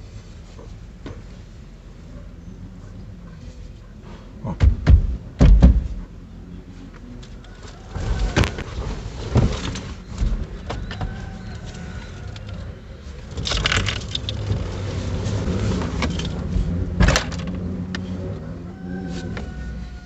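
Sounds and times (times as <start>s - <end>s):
tools clattering: 13.3s - 14.6s.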